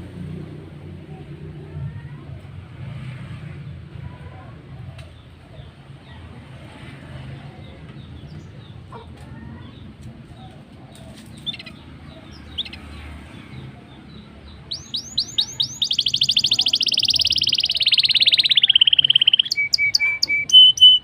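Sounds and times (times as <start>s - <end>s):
canary singing: 11.2s - 21.0s.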